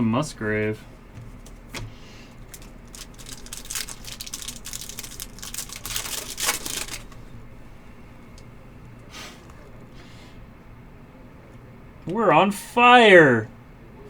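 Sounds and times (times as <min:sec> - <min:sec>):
trading cards rustling: 0:01.0 - 0:07.4.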